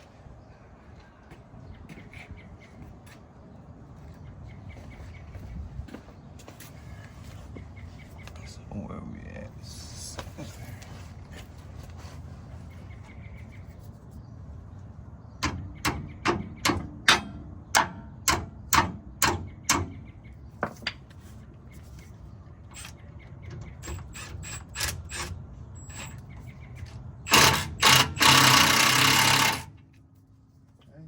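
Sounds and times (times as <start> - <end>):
power tool rattling: 23.7 - 26.2, 27.3 - 29.8.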